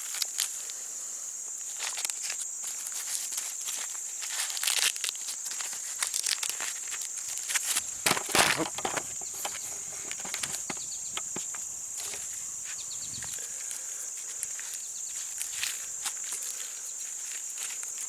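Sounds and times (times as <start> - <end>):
corn husks crackling and tearing: 1.8 - 12.4
high-pitched hiss: 7.8 - 18.0.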